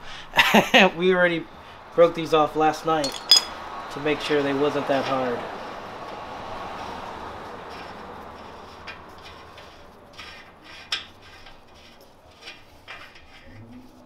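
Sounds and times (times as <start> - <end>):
metallic clicks and clinks: 3.0 - 3.6.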